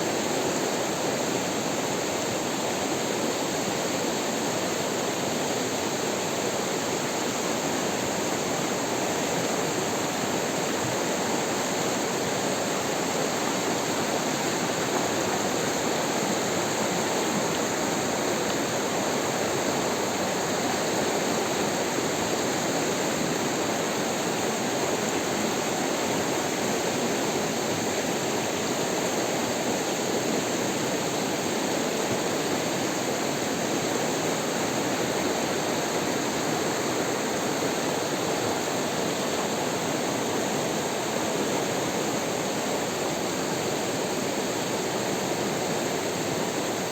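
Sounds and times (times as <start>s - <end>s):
running water rushing: 0.0s - 46.9s.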